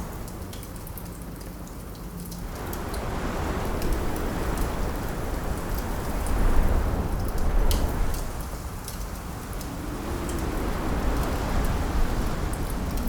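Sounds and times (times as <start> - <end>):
rushing wind: 2.8 - 13.0.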